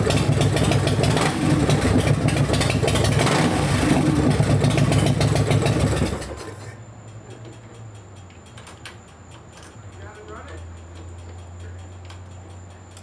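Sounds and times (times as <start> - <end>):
motorcycle engine running loud: 0.0 - 6.4
even ticking: 6.8 - 13.0.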